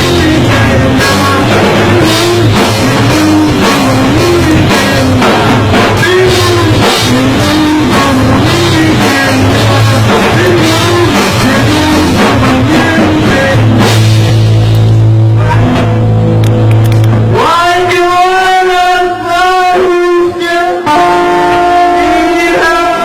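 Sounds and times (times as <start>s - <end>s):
drum kit: 0.0s - 18.8s
guitar: 0.0s - 23.0s.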